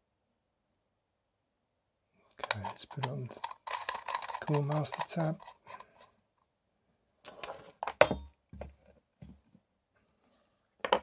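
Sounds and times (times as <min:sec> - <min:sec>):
small metal parts clinking: 0:02.4 - 0:05.8, 0:07.3 - 0:08.2.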